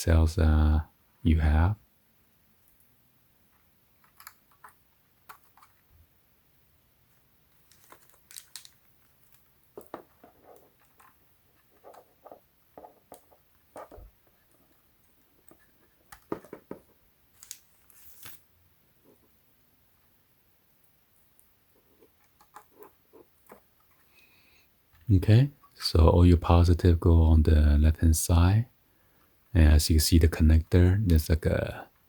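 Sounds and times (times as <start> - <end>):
plastic connectors clicking: 7.7 - 10.0.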